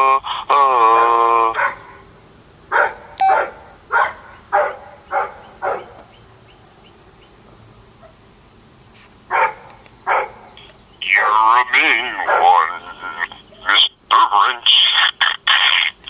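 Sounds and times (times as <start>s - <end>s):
dog barking ringtone: 2.8s - 5.9s, 12.2s - 12.6s.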